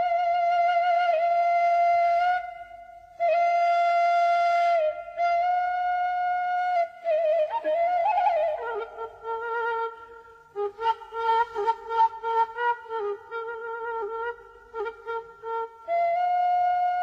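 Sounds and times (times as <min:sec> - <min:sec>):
slow flute melody: 0:00.0 - 0:17.0.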